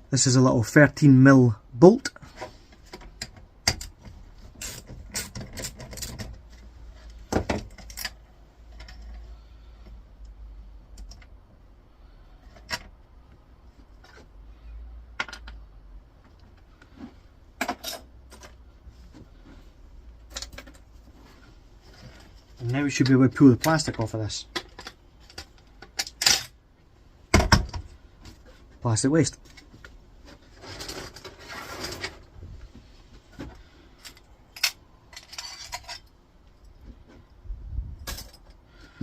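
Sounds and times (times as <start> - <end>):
metal tools clicking and clinking: 17.6 - 18.6, 22.9 - 26.6, 34.0 - 36.8, 38.0 - 38.6.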